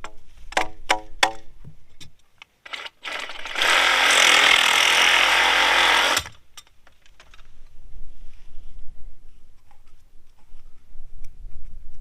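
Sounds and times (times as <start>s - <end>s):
handheld power tool running: 2.7s - 6.4s.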